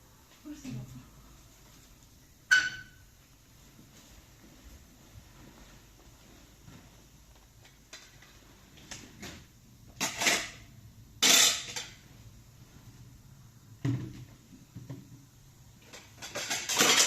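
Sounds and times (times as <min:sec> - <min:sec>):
dishes clattering and scraping: 0:10.0 - 0:12.0, 0:15.8 - 0:17.0.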